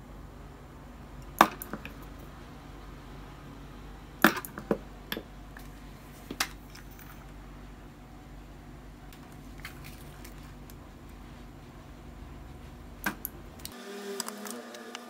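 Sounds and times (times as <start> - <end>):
low steady hum: 0.0 - 14.2
small crackles: 9.1 - 11.4.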